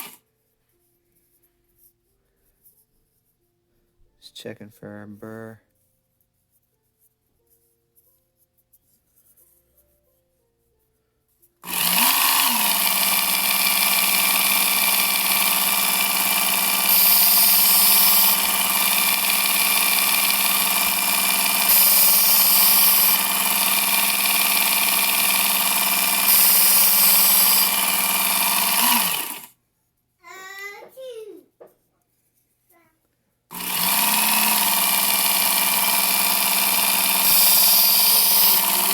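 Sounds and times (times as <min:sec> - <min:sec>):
belt sharpener motor running: 0:11.6 - 0:29.5, 0:33.5 - 0:38.9
knife grinding on abrasive belt: 0:11.6 - 0:29.5, 0:33.5 - 0:38.9.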